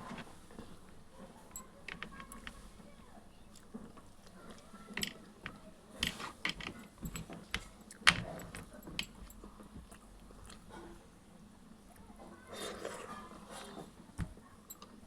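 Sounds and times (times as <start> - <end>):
sharp clicks and clinks: 1.5 - 2.7, 4.9 - 9.5
person chewing food: 8.7 - 11.1.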